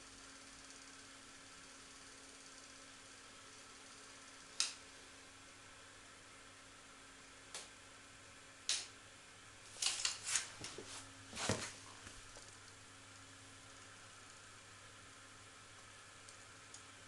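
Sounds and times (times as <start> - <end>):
faint room hum: 0.0 - 17.0.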